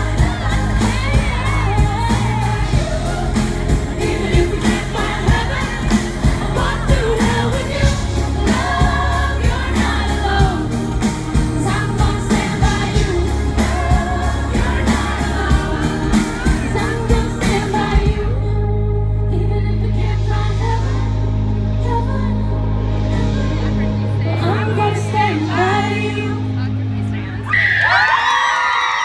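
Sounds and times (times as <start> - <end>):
live band playing: 0.0 - 18.4
steady drumbeat: 0.0 - 18.4
woman singing pop song: 0.0 - 27.5.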